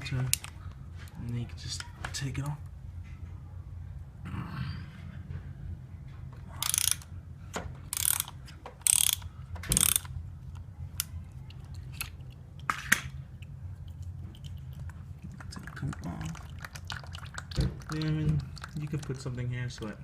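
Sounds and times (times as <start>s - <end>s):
hand ratchet clicking: 6.6s - 7.0s, 7.9s - 10.1s.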